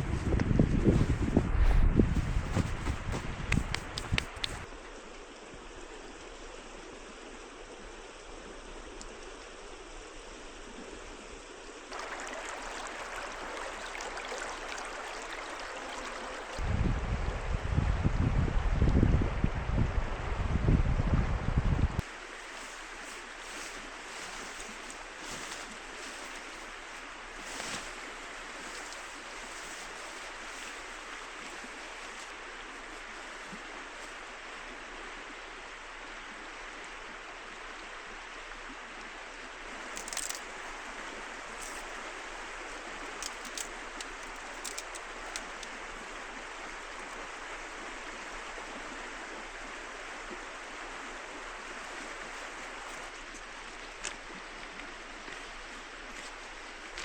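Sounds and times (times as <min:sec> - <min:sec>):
light clicks and taps: 0:02.6 - 0:04.7
river water rushing: 0:03.8 - 0:16.6, 0:22.0 - 0:57.0.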